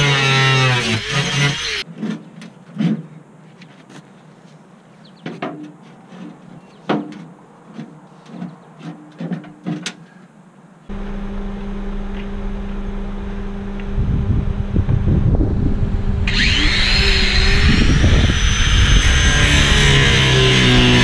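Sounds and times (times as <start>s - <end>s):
angle grinder humming: 0.0s - 1.8s, 10.9s - 21.0s.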